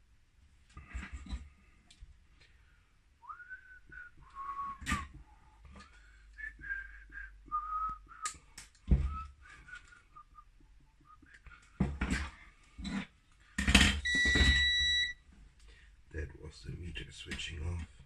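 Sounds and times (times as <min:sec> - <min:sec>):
person whistling a tune: 0:03.2 - 0:05.1, 0:06.4 - 0:08.3.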